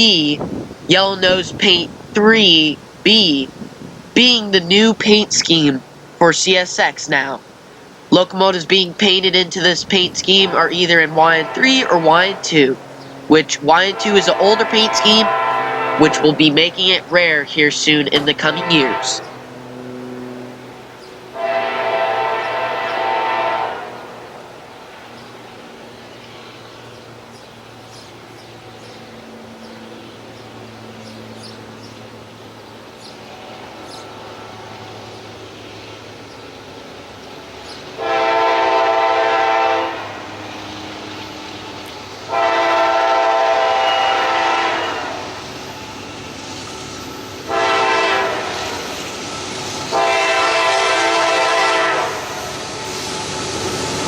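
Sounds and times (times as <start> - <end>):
locomotive engines rumbling low: 0.0 - 54.0
locomotive air horn chord: 10.3 - 13.1, 13.8 - 17.5, 18.1 - 20.6, 21.2 - 24.4, 38.0 - 40.6, 42.3 - 45.4, 47.5 - 48.9, 49.9 - 52.6.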